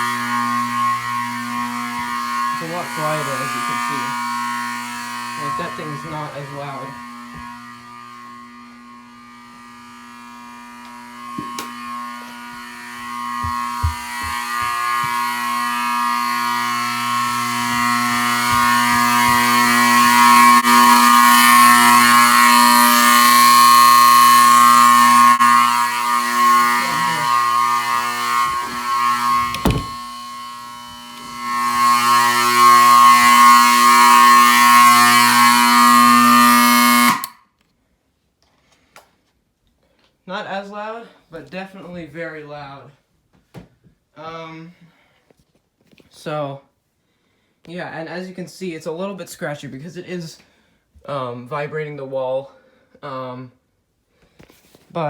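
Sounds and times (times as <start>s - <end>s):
loud alarm horn tone: 0.0s - 37.4s.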